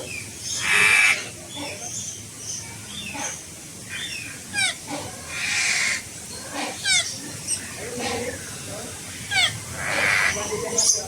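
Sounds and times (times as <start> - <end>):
birds chirping and whistling: 0.0 - 4.8, 5.4 - 11.0
bird harsh screeches: 4.5 - 6.0, 9.2 - 10.5.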